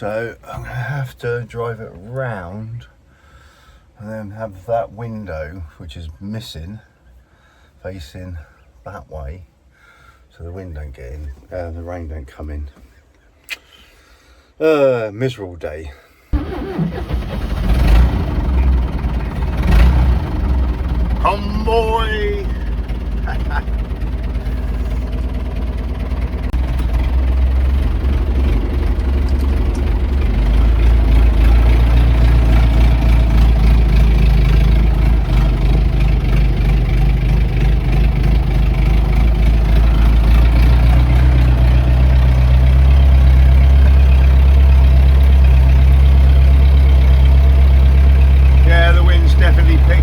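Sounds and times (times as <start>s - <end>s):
tractor engine running: 16.4s - 50.0s.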